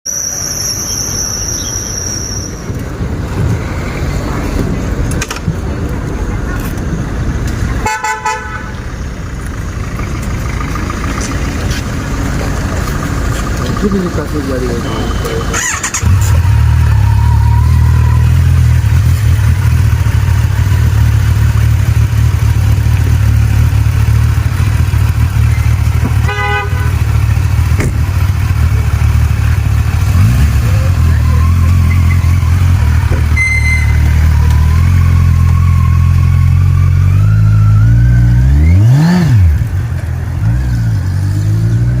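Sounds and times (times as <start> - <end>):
motorcycle engine idling: 8.4 - 36.8
short horn toot: 33.3 - 34.3.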